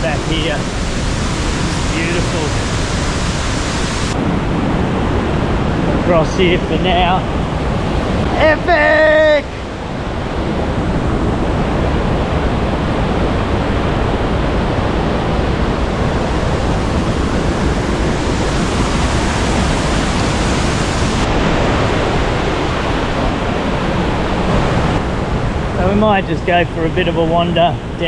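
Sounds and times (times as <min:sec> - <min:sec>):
waterfall rushing: 0:00.0 - 0:04.2, 0:07.4 - 0:10.4, 0:15.7 - 0:23.1.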